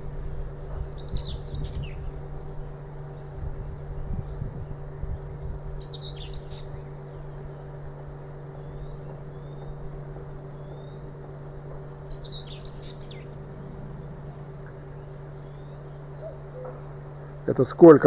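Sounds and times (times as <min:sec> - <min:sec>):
woodworking machine droning: 0:00.0 - 0:18.0
small bird chirping: 0:01.0 - 0:02.8, 0:03.6 - 0:07.8, 0:08.5 - 0:09.9, 0:10.5 - 0:17.0.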